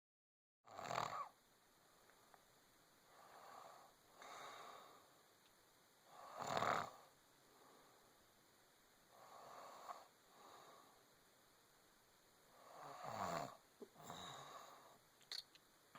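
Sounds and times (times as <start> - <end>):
woman snoring: 0.7 - 1.3, 6.1 - 7.1, 12.6 - 15.0
soft snoring breaths: 0.7 - 1.4, 3.0 - 5.2, 6.0 - 8.2, 9.1 - 11.1, 12.5 - 15.1.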